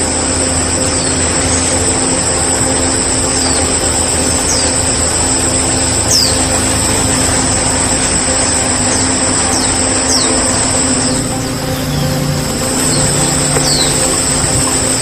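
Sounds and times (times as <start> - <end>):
constant high buzz: 0.0 - 15.0
small birds chirping: 0.7 - 15.0.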